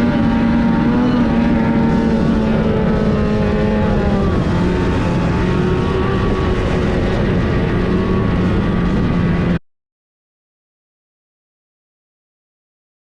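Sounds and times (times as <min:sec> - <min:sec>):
snowmobile engine running: 0:00.0 - 0:09.6.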